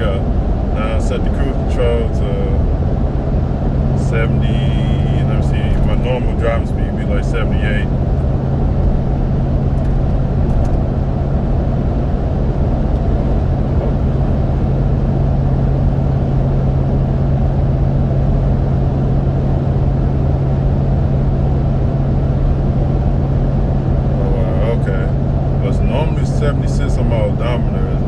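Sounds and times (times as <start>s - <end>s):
constant low hum: 0.0s - 28.0s
tire road noise: 0.0s - 28.0s.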